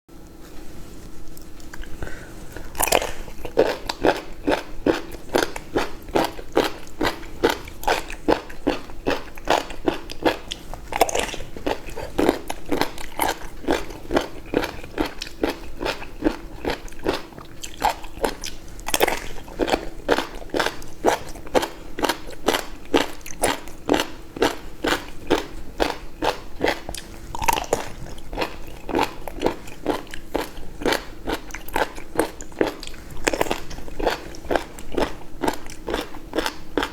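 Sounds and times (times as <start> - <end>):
chewing and biting seafood: 1.4 - 36.9.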